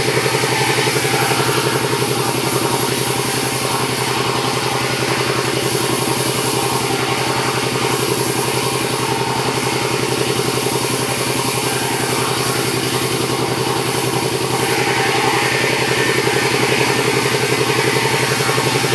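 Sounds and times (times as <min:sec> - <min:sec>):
bright hissing: 0:00.0 - 0:18.9
sawmill engine running: 0:00.0 - 0:18.9.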